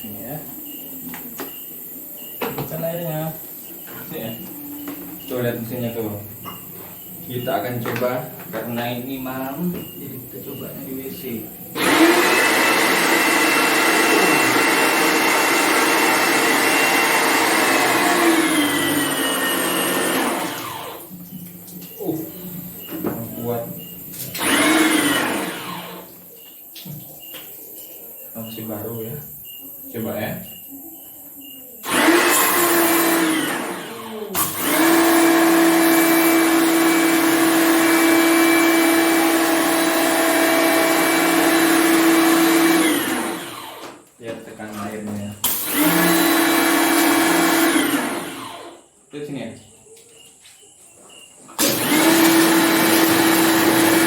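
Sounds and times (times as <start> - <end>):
pressure washer motor whine: 11.7 - 21.1, 24.2 - 26.2, 31.8 - 44.0, 45.4 - 48.8, 51.6 - 54.0.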